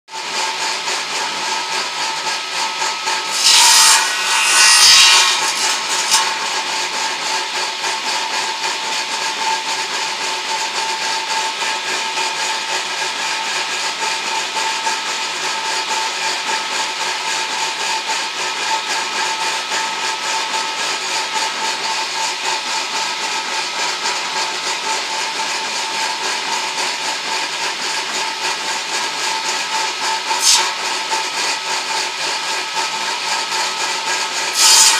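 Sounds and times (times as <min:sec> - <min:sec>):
saw cutting wood: 0:00.1 - 0:34.9
circular saw whining: 0:00.2 - 0:34.9.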